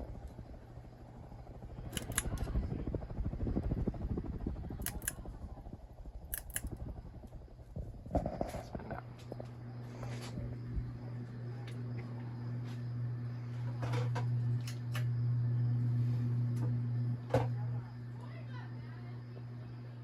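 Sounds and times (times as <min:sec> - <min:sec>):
whoosh of fan blades: 0:00.0 - 0:11.1
ceiling fan humming: 0:00.0 - 0:20.0
sharp clicks: 0:01.8 - 0:02.6, 0:04.8 - 0:05.3, 0:06.2 - 0:07.4.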